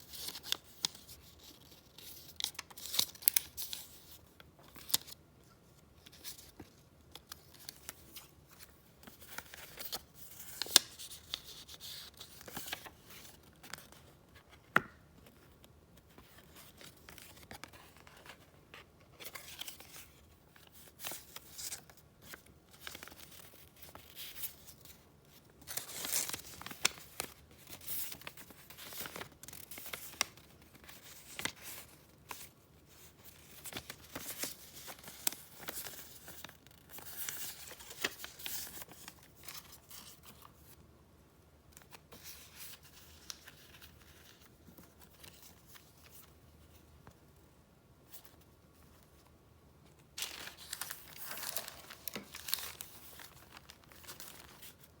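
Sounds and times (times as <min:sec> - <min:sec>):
paper rustling and crinkling: 0:00.0 - 0:05.2, 0:05.8 - 0:40.8, 0:41.8 - 0:47.2, 0:50.2 - 0:55.0.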